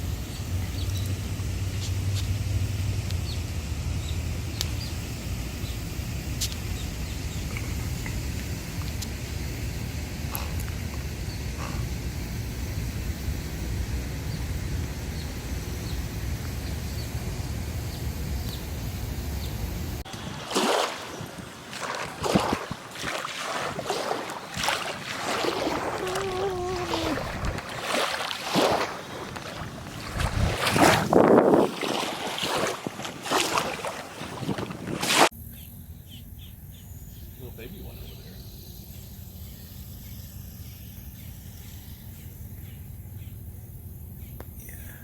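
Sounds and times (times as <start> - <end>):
wind buffeting microphone: 19.8 - 35.2
wavering pitched call: 25.3 - 27.6.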